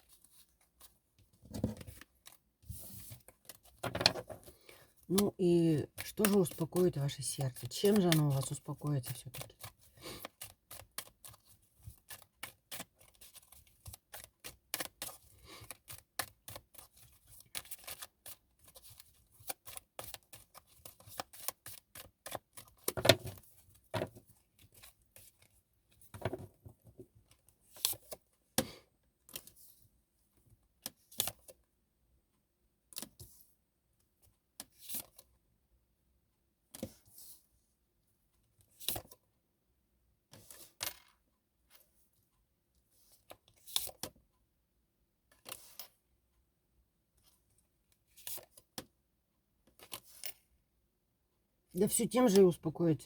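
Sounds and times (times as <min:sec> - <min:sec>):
cards being shuffled: 0:01.6 - 0:23.4.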